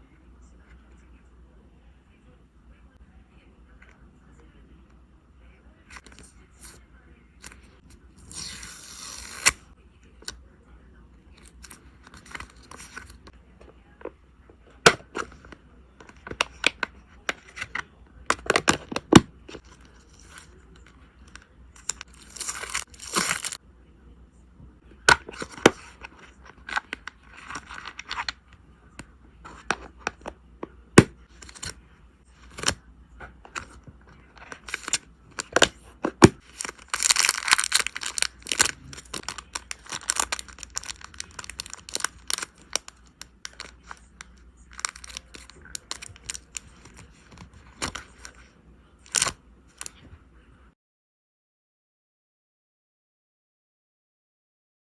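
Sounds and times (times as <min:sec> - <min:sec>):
tape ripping: 0:08.2 - 0:09.6, 0:21.8 - 0:23.6, 0:32.5 - 0:32.8, 0:34.5 - 0:44.1, 0:44.7 - 0:47.1, 0:49.1 - 0:49.3
plastic sleeves and tape rustling: 0:21.8 - 0:23.6, 0:33.5 - 0:48.4, 0:49.1 - 0:49.9.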